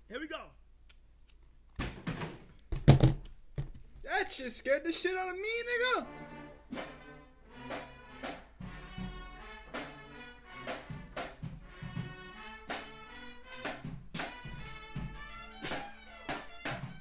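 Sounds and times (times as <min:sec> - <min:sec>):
music with steady beat: 0:06.1 - 0:17.0.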